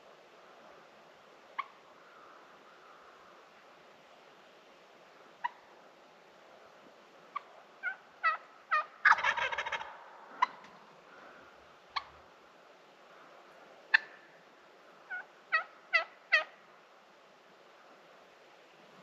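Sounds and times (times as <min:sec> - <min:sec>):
turkey rattling gobble: 0:01.6 - 0:01.8, 0:07.3 - 0:10.7, 0:13.9 - 0:14.2, 0:15.1 - 0:16.6.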